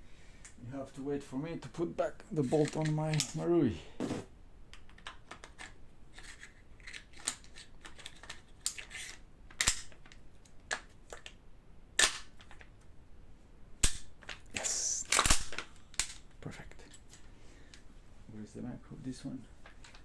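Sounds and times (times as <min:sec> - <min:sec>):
small clicks and scrapes of parts: 0:01.6 - 0:03.4, 0:04.0 - 0:11.4, 0:12.0 - 0:12.9, 0:13.8 - 0:17.9, 0:19.4 - 0:20.0
loud snap: 0:13.8 - 0:16.1.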